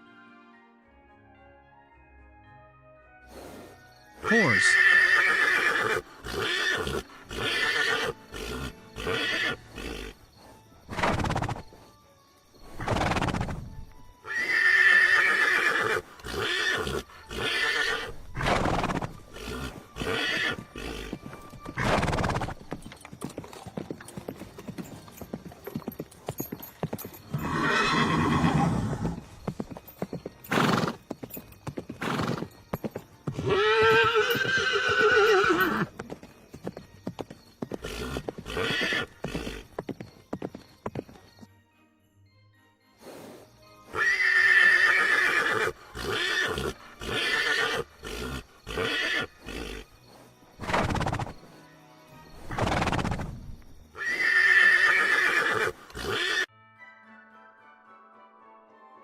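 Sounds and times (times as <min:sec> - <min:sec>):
horses whinnying: 0:04.2 - 0:10.2, 0:10.9 - 0:11.7, 0:12.6 - 0:24.9, 0:26.8 - 0:29.5, 0:30.4 - 0:31.0, 0:31.7 - 0:32.6, 0:33.3 - 0:36.0, 0:37.6 - 0:40.0, 0:43.9 - 0:50.0, 0:50.6 - 0:51.4, 0:52.4 - 0:53.4, 0:54.0 - 0:56.5
hooves clip-clopping: 0:18.6 - 0:41.5.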